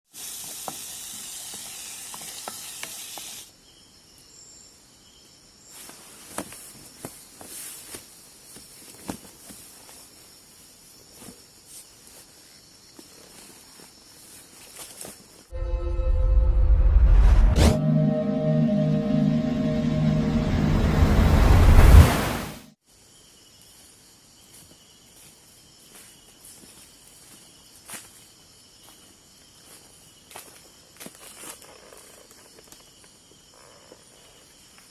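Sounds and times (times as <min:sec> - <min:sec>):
insect chorus: 0:00.2 - 0:15.5, 0:22.8 - 0:34.9
insect chirring: 0:22.9 - 0:34.9.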